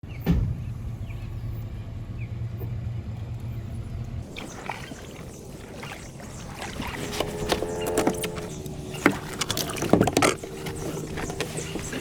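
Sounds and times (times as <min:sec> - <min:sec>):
light water splashing: 0:04.2 - 0:12.0.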